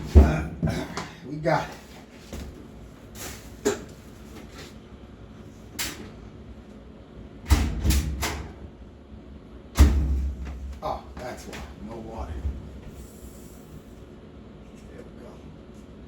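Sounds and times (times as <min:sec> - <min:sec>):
deep thud: 0:09.8 - 0:10.7
loud thump: 0:09.8 - 0:10.7.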